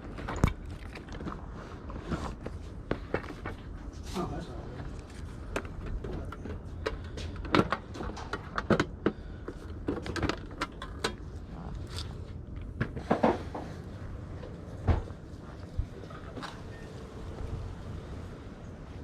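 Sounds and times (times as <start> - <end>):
hard objects knocking and rattling: 5.0 - 13.9.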